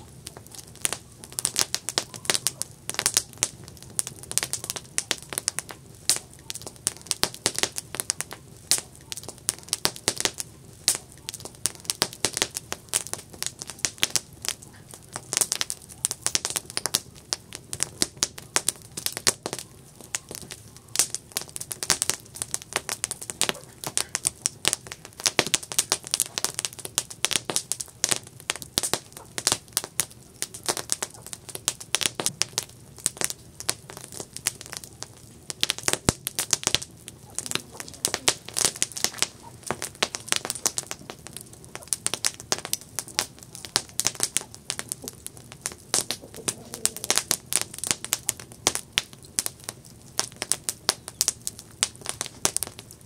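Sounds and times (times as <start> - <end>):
campfire crackling: 0.0 - 53.0
sharp pops and snaps of fire: 0.0 - 53.0.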